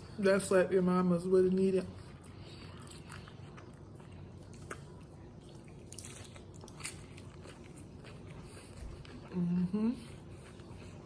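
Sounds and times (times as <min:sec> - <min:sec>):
faint chewing: 0:01.5 - 0:11.0
lettuce crunching: 0:02.8 - 0:09.4.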